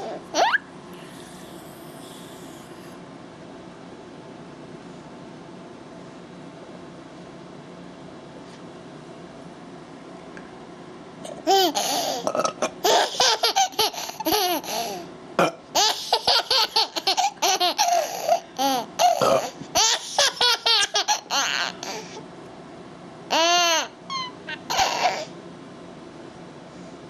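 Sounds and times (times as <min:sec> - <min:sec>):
child laughing: 0:00.0 - 0:00.7, 0:11.4 - 0:12.2, 0:12.8 - 0:15.1, 0:15.8 - 0:22.1, 0:23.3 - 0:25.3.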